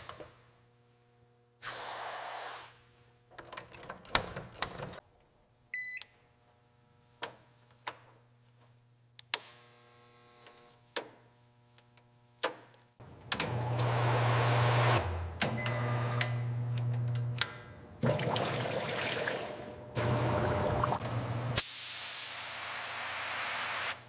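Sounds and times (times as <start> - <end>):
air tool hissing with motor hum: 1.6 - 2.7.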